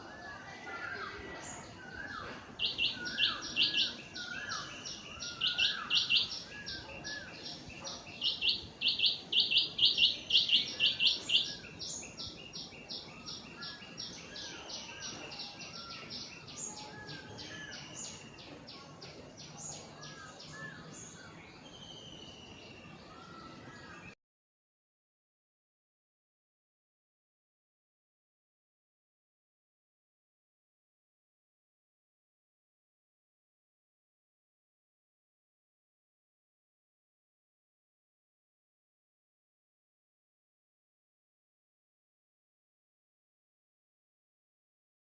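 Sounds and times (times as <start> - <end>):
small birds chirping: 0.0 - 24.2
lower looping bird calls: 0.3 - 18.8.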